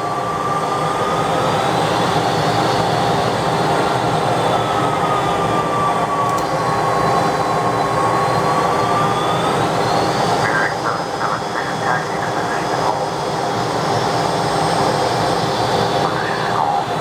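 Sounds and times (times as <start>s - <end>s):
jet engines roaring: 0.0s - 17.0s.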